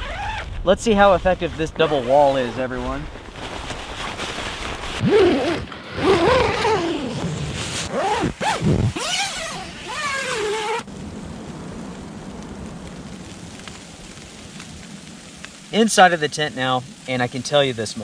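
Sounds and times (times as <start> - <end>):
steady hiss: 0.0 - 4.9, 7.0 - 18.0
tent zipper pulled: 0.0 - 10.9.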